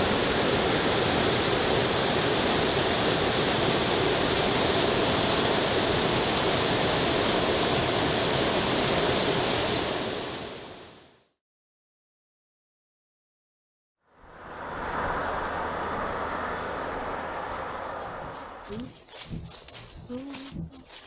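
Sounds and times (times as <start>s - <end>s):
waterfall rushing: 0.0s - 10.8s.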